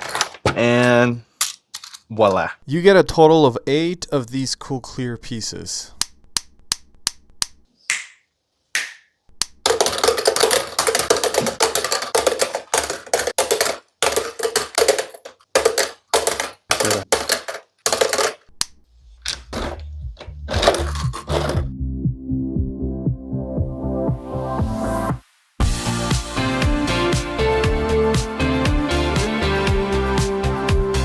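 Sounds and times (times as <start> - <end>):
plastic pieces clicking and rattling: 0.0 - 2.1, 9.4 - 18.5, 20.5 - 21.6
music: 19.0 - 31.0.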